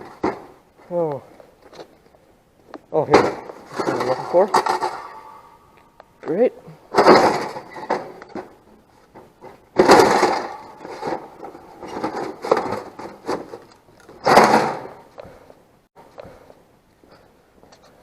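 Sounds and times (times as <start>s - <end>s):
small hard objects clattering: 3.4s - 5.3s.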